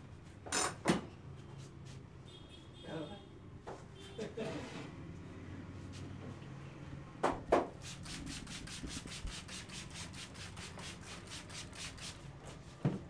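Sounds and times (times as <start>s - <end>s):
hands rubbing hair and scalp: 7.8s - 12.8s.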